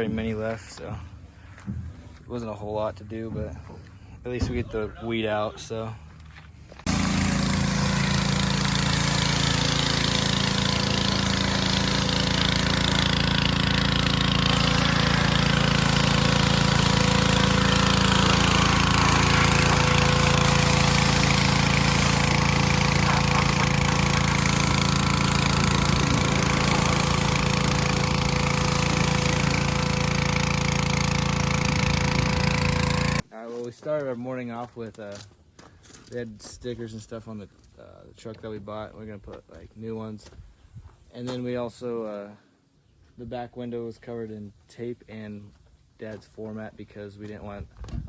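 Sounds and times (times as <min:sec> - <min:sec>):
machine motor hum: 0:06.8 - 0:33.2
loud rushing hiss: 0:06.9 - 0:32.2.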